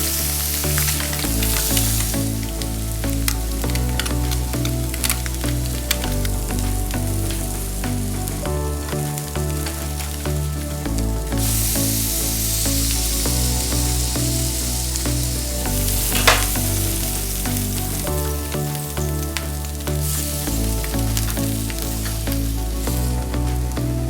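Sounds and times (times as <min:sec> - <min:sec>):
food sizzling in a pan: 0:00.0 - 0:06.0, 0:11.4 - 0:23.6
background music: 0:00.0 - 0:24.0.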